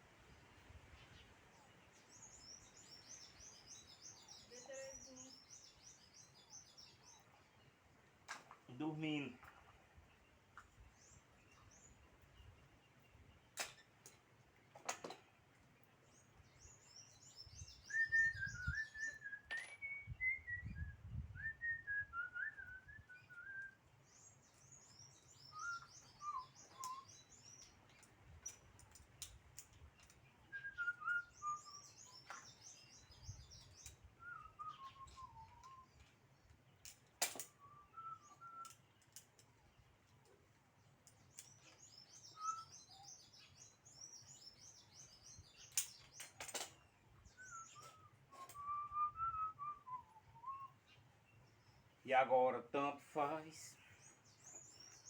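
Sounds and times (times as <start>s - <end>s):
birds chattering: 1.2s - 7.8s
birds whistling: 16.2s - 27.8s, 30.0s - 36.4s, 37.3s - 39.2s, 41.3s - 52.0s, 53.5s - 55.0s.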